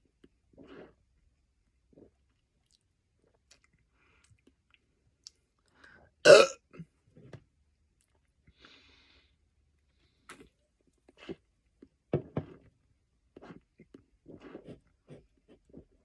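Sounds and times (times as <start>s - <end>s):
man belching: 6.3s - 6.6s.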